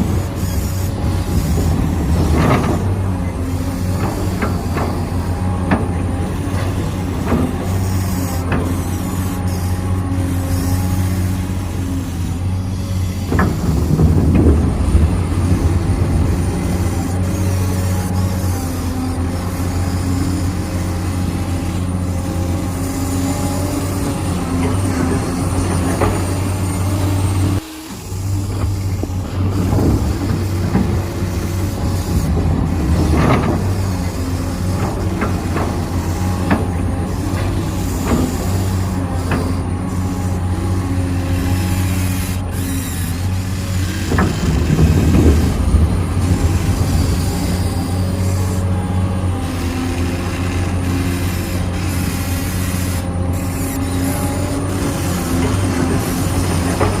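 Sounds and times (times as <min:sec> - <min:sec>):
low engine-like drone: 0:00.0 - 0:57.0
clanks and scrapes: 0:10.4 - 0:22.2, 0:41.2 - 0:57.0.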